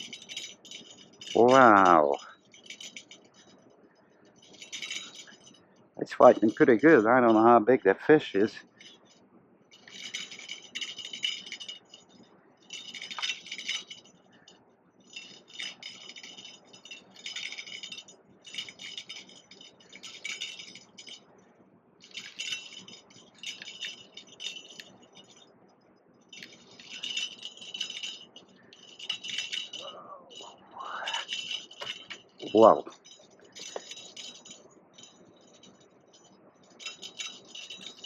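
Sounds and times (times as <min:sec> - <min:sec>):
fishing reel ratcheting: 0:04.4 - 0:05.6, 0:09.7 - 0:12.0, 0:12.7 - 0:14.1, 0:26.3 - 0:30.0, 0:31.1 - 0:38.0.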